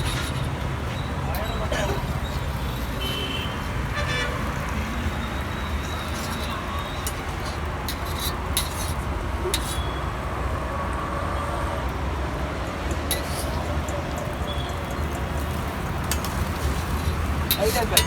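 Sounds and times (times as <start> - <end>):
metal clinks of cooking utensils: 0.0 - 3.2, 5.3 - 10.0, 12.9 - 18.0
low traffic rumble: 0.0 - 18.0.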